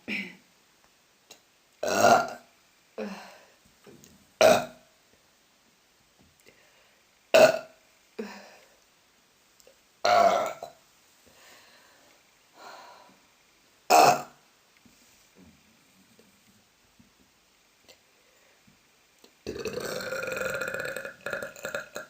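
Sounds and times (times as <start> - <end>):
woman burping loudly: 1.8 - 2.4, 4.4 - 4.8, 7.3 - 8.5, 10.0 - 10.8, 13.9 - 14.4, 19.4 - 22.0.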